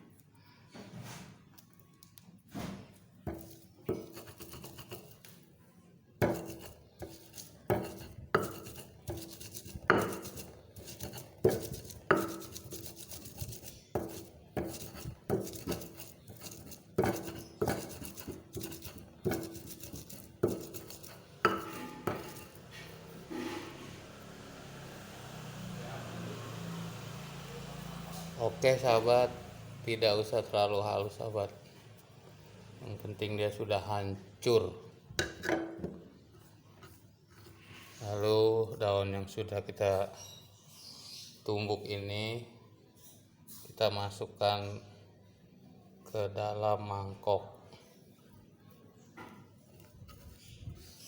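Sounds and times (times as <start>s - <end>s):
pestle knocking in mortar: 3.3s - 5.2s, 6.2s - 22.7s, 35.2s - 36.0s.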